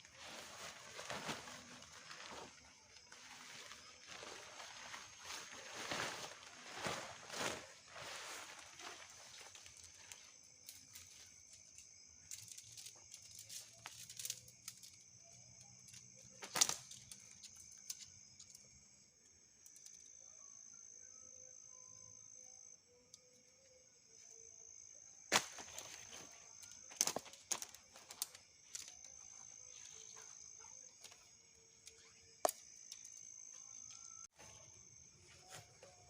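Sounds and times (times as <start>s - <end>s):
rustling: 0.0s - 11.6s
insects chirring: 0.0s - 36.0s.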